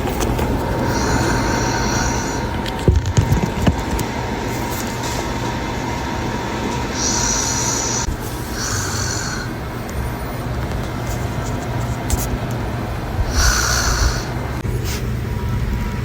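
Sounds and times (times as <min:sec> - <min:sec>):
hissing breaths: 0:00.6 - 0:02.8, 0:06.7 - 0:10.0, 0:13.1 - 0:15.1
person snoring: 0:00.8 - 0:02.6, 0:06.9 - 0:09.7, 0:13.2 - 0:14.4.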